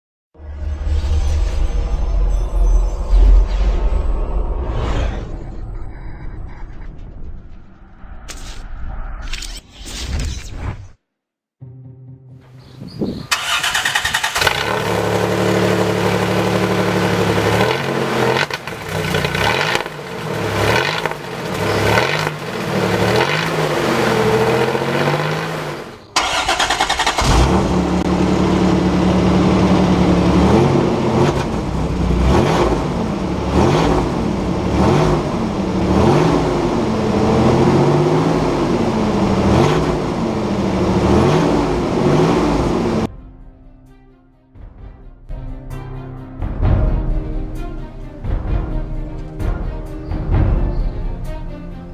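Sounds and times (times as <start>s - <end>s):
pickup engine revving: 13.3s - 43.1s.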